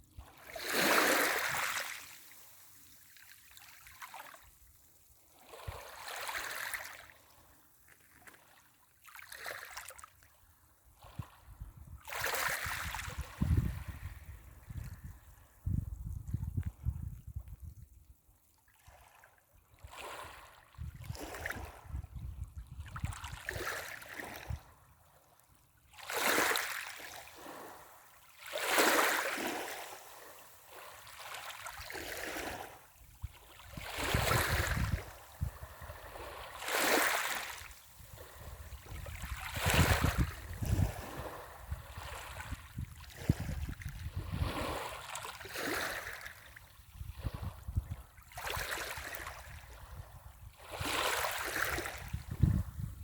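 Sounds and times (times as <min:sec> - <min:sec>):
waves on pebble beach: 0:00.3 - 0:04.5, 0:05.3 - 0:07.3, 0:12.0 - 0:14.4, 0:26.0 - 0:46.6, 0:50.6 - 0:52.2.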